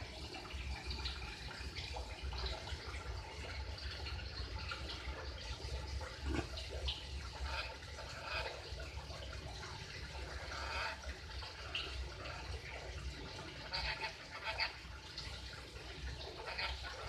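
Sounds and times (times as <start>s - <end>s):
parrot squawks and chirps: 13.6s - 14.8s, 16.4s - 17.0s.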